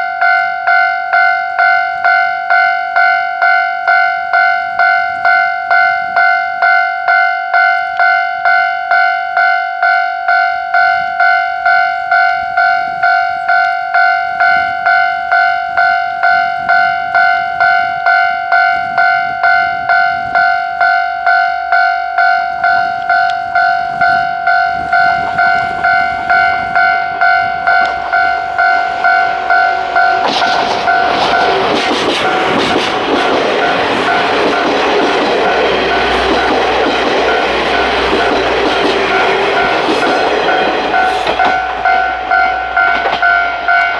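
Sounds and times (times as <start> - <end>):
crossing bell two-tone ding: 0.0 - 43.9
diesel train running: 9.9 - 43.9
train wheel clatter: 27.6 - 43.9.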